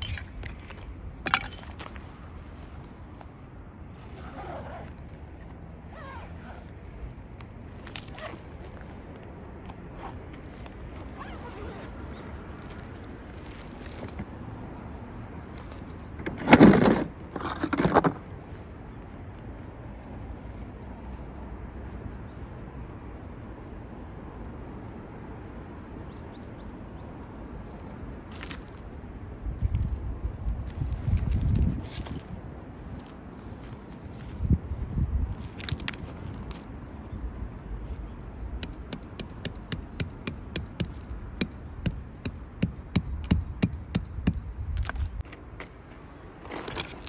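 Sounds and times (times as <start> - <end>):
sharp knocks: 38.6 - 44.4.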